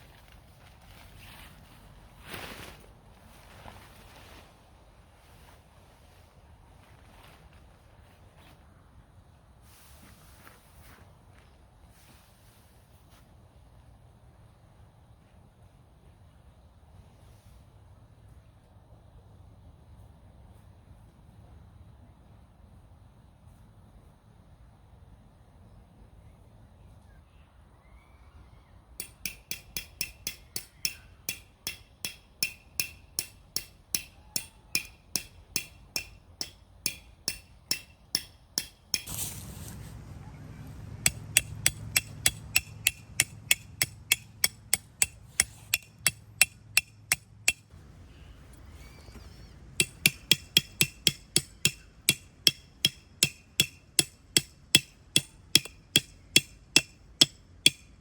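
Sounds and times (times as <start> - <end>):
hammer striking metal tent peg: 29.0 - 39.5, 41.0 - 47.7, 49.8 - 58.0.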